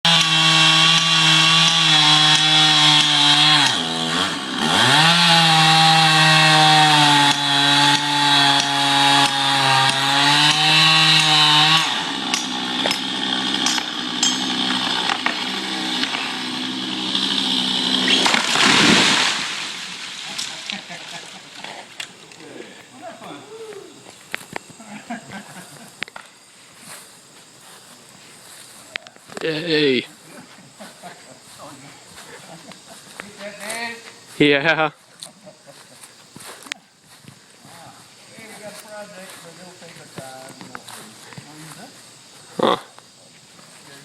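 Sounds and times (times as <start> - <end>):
chainsaw running at high revs: 0.0 - 19.8.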